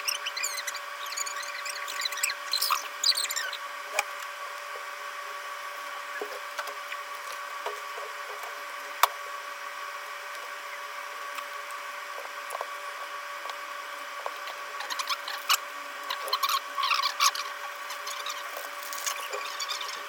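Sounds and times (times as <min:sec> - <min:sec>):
steady electrical hum: 0:00.0 - 0:20.0.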